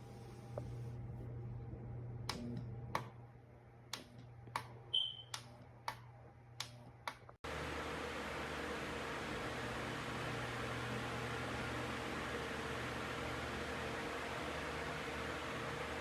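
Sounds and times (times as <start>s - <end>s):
pedestal fan running: 7.4s - 16.0s.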